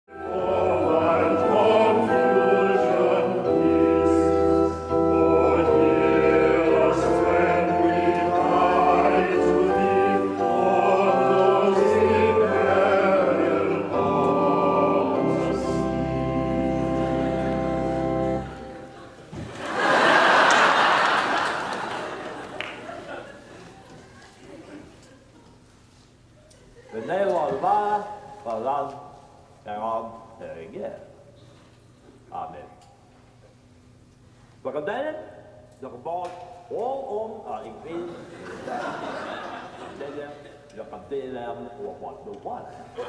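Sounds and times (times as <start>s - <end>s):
deep held bass notes: 0.1s - 19.1s
choir singing sustained chords: 0.1s - 22.4s.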